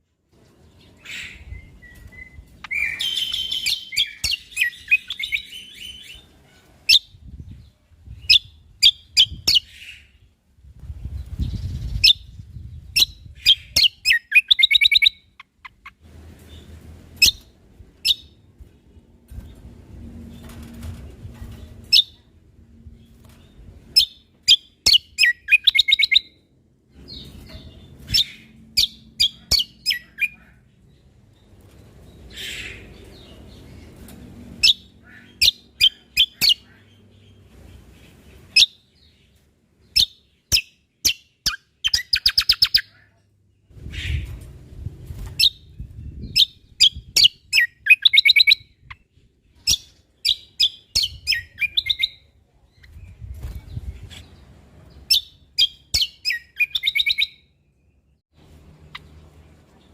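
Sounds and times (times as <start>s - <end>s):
songbird chirps and trills: 0.3s - 59.9s
faint low rumble: 15.7s - 24.4s.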